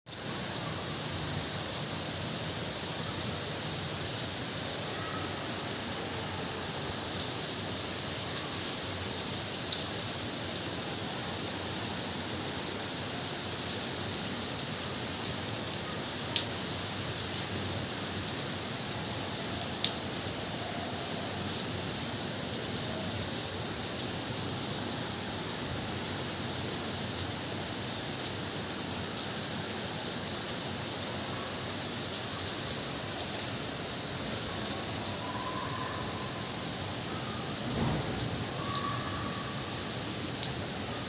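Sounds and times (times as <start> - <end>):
steady rain hiss: 0.1 - 41.0
sharp ticks of raindrops: 8.4 - 10.0, 13.6 - 20.2, 26.2 - 28.5, 36.4 - 41.0.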